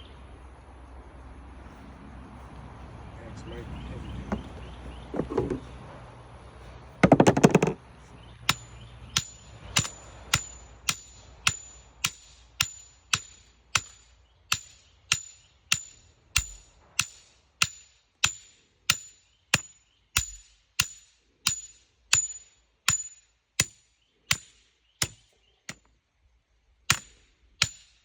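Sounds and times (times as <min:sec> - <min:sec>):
metal hammer pounding a stake: 0:07.0 - 0:07.8, 0:08.5 - 0:25.8, 0:26.9 - 0:28.0.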